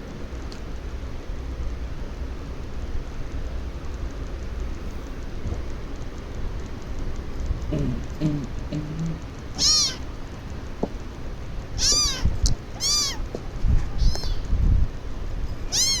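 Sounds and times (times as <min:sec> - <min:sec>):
kitten meowing: 0:09.5 - 0:10.1, 0:11.8 - 0:14.5, 0:15.6 - 0:16.0.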